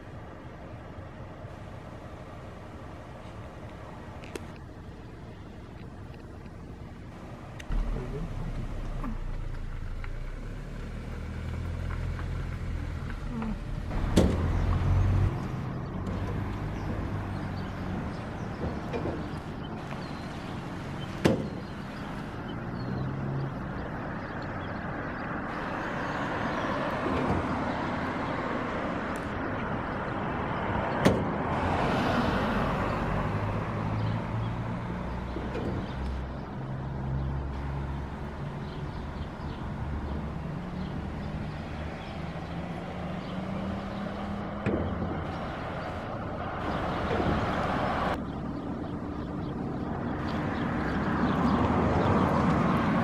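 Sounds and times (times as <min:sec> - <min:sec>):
car engine and road noise: 0:00.0 - 0:53.0
sharp knocks: 0:14.0 - 0:14.8.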